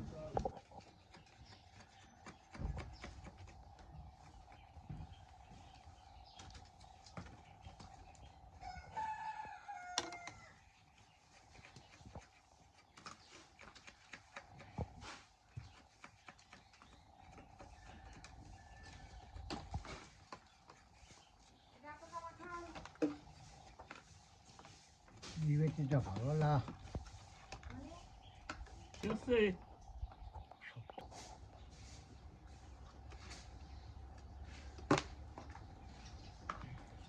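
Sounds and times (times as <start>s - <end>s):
rooster crowing: 8.6s - 10.6s, 17.7s - 19.3s.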